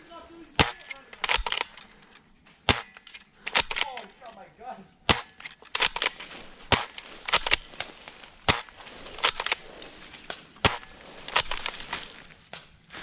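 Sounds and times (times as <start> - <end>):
airsoft guns firing: 0.6 - 1.9, 2.6 - 4.2, 5.0 - 12.1.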